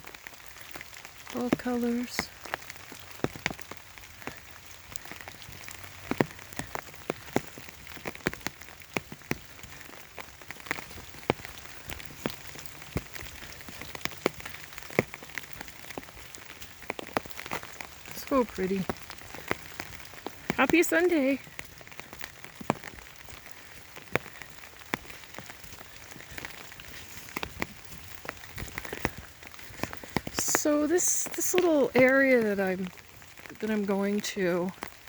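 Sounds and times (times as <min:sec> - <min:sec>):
rain pattering on an umbrella: 0:00.0 - 0:35.0.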